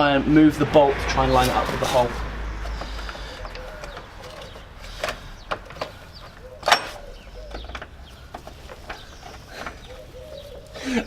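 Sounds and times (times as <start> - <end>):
metallic clicks of bolt on bracket: 6.6 - 7.9.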